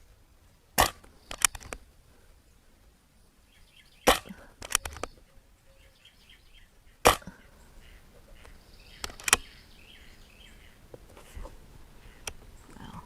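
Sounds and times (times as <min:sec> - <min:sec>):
air rifle shot crack: 0:00.8 - 0:01.8, 0:04.0 - 0:05.1, 0:07.0 - 0:07.5.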